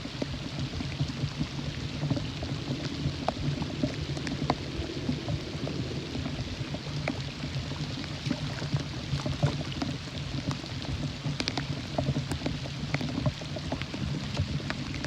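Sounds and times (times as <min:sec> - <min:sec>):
rain falling: 0:00.0 - 0:15.0
low rumble: 0:00.4 - 0:09.9, 0:13.7 - 0:15.0.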